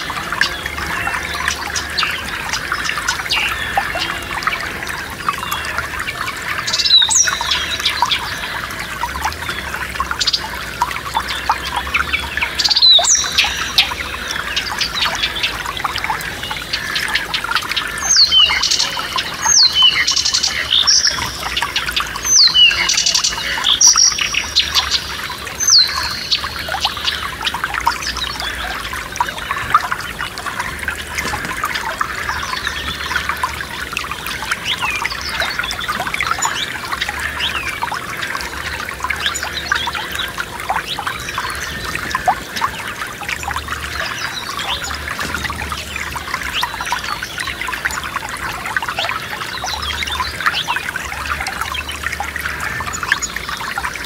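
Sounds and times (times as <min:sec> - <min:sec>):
stream trickling: 0:00.0 - 0:54.0.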